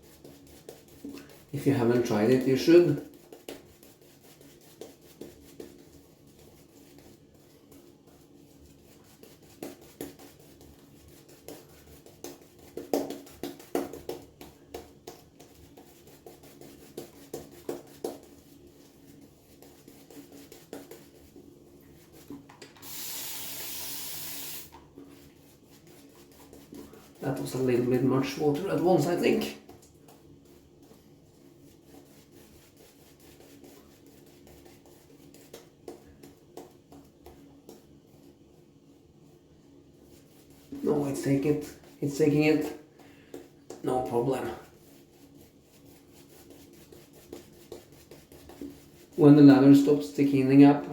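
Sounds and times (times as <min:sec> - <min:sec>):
shaving brush brushing lather: 0:00.0 - 0:38.3, 0:40.0 - 0:50.6
spray bottle hissing: 0:22.8 - 0:24.7.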